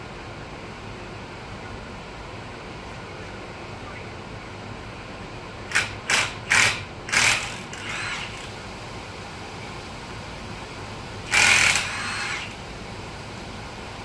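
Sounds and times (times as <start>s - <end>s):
impact wrench bursts: 5.7s - 8.6s, 11.2s - 12.6s.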